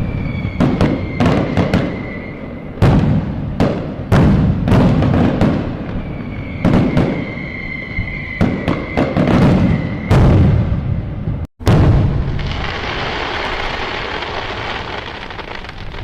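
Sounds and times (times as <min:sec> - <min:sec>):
firework whistle: 0:00.0 - 0:04.1, 0:04.7 - 0:11.0
firework bangs: 0:00.0 - 0:16.0
low rumbling boom: 0:08.4 - 0:13.7.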